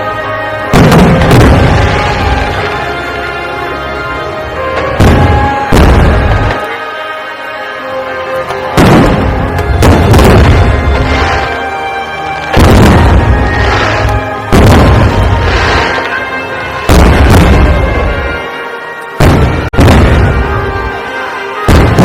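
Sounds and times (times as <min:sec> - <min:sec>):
firework booms with echo: 0:00.7 - 0:02.9, 0:04.7 - 0:06.6, 0:08.7 - 0:11.6, 0:12.5 - 0:18.4, 0:19.2 - 0:21.0, 0:21.7 - 0:22.0.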